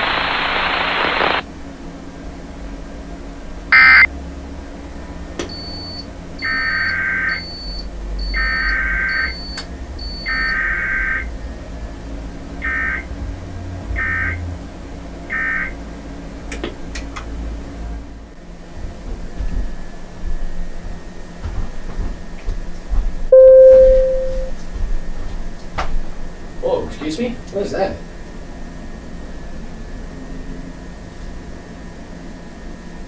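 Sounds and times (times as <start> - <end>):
buzzing digital data bursts: 0.0 - 1.4, 3.8 - 4.1, 5.6 - 11.3, 12.6 - 13.1.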